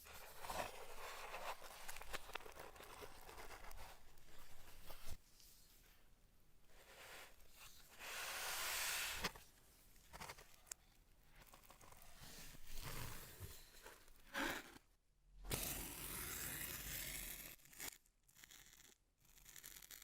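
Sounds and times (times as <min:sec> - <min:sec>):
rustling and scraping handling noises: 0:00.0 - 0:14.9.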